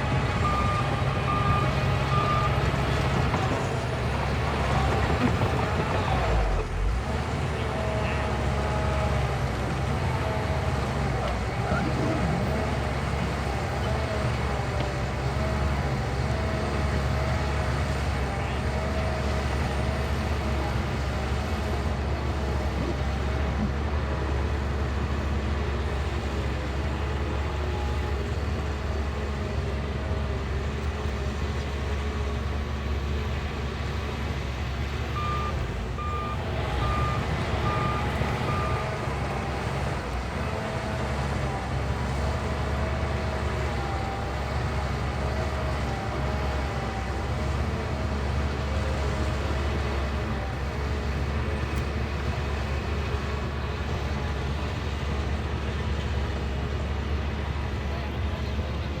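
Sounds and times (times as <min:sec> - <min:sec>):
bulldozer diesel engine running: 0:00.0 - 0:59.0
reversing alarm beeping: 0:35.2 - 0:39.2.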